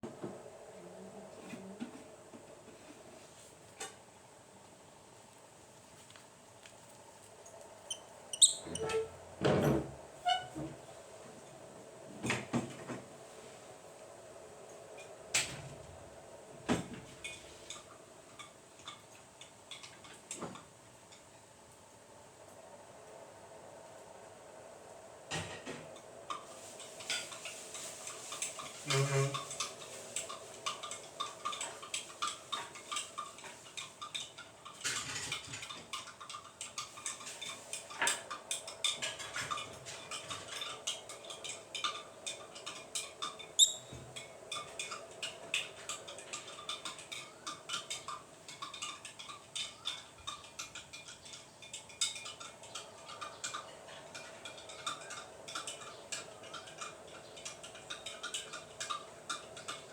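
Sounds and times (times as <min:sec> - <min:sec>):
birds clicking and scratching: 0:06.6 - 0:09.1, 0:26.3 - 0:59.9.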